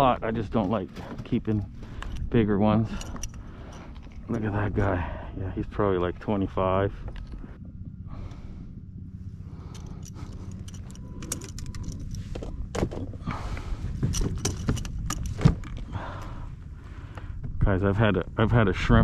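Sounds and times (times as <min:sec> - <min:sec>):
low steady rumble: 0:00.0 - 0:19.0
clicks knocks and rattles: 0:14.0 - 0:15.9.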